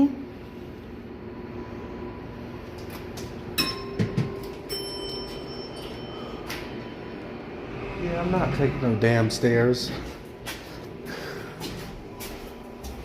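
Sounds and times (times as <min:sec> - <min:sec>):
steady low hum: 0:00.0 - 0:13.0
elevator clicks and clunks: 0:02.7 - 0:07.4
electronic chime ringing: 0:03.6 - 0:07.7.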